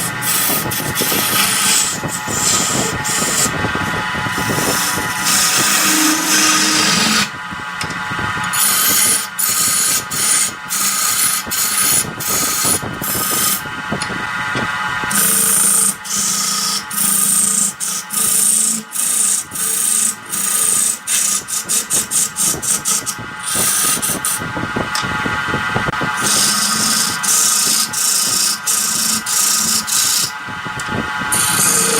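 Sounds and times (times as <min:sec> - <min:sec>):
turning tool cutting wood hiss: 0:00.0 - 0:03.6, 0:04.3 - 0:07.3, 0:15.1 - 0:24.4, 0:26.2 - 0:30.4, 0:31.3 - 0:31.9
wood lathe running: 0:00.0 - 0:07.5, 0:08.5 - 0:13.6, 0:15.1 - 0:24.4, 0:26.1 - 0:30.4, 0:31.1 - 0:31.9.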